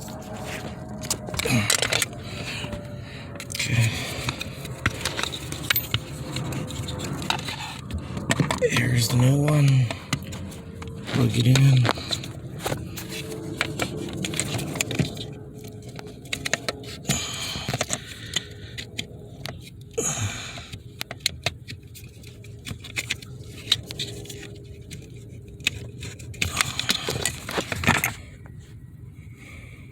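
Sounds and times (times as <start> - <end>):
clicks knocks and rattles of hand work: 20.7 - 28.2.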